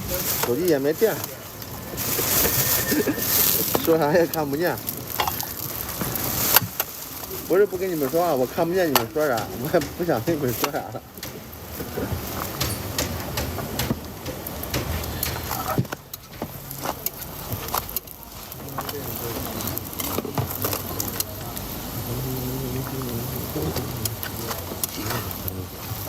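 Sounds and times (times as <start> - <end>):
background voices: 0.0 - 12.5, 15.4 - 26.0.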